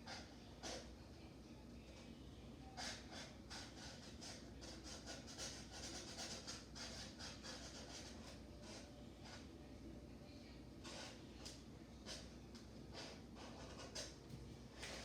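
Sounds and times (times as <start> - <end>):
marker scratching on cup: 0.0 - 0.9, 2.8 - 9.6, 10.8 - 14.2.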